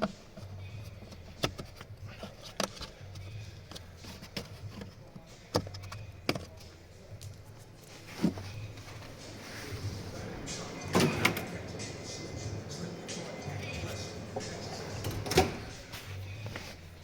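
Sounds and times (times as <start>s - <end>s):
parts clicking and knocking: 0.0s - 6.6s.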